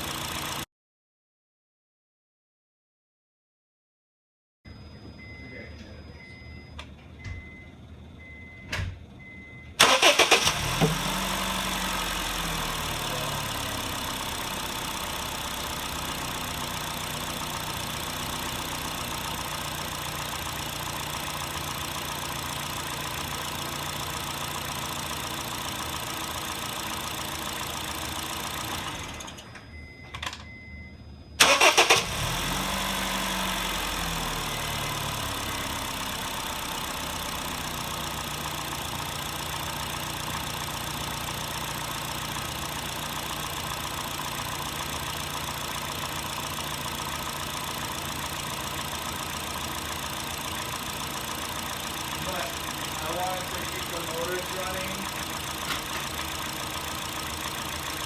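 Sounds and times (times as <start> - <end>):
car engine starting and idling: 0.0 - 0.6, 6.2 - 58.0
short beeps: 4.7 - 9.8, 29.2 - 31.4.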